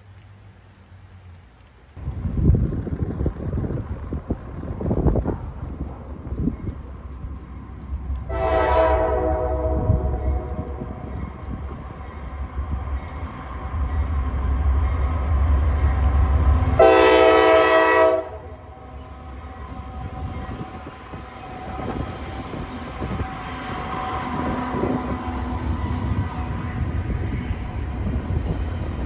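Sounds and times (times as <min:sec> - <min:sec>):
diesel locomotives rumbling: 0:00.0 - 0:29.0
train horn blast: 0:08.2 - 0:11.0, 0:16.7 - 0:18.8.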